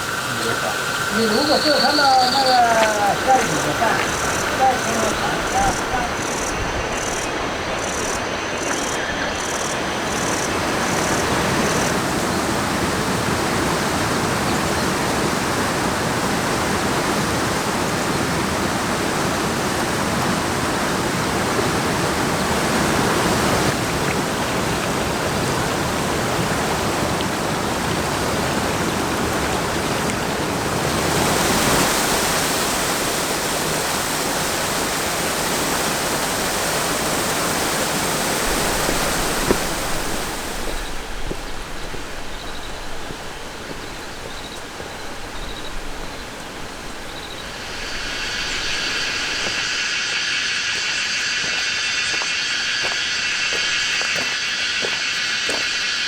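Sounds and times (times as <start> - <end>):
fast-flowing stream water: 0.0 - 41.9, 45.8 - 56.0.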